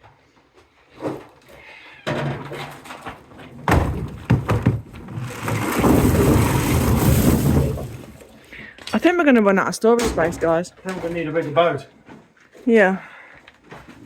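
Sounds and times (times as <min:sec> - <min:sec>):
maize cobs clattering: 0:02.2 - 0:08.4
hard knocks and thuds: 0:03.4 - 0:08.3.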